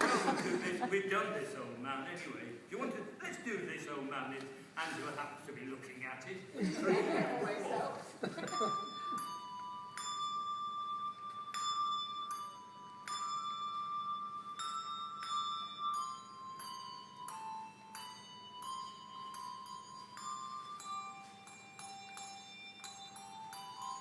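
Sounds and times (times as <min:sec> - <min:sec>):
handbells playing a slow melody: 0:08.2 - 0:24.0.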